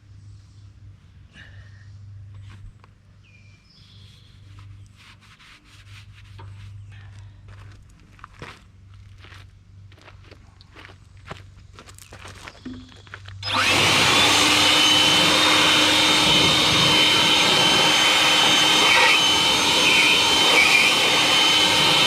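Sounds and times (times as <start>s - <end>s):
hose water spraying on metal: 13.4s - 22.0s.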